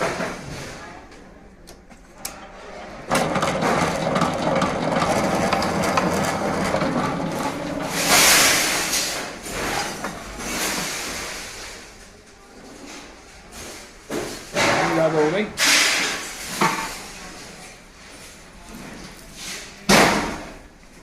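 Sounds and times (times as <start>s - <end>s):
wire stripping machine running: 2.2s - 9.4s.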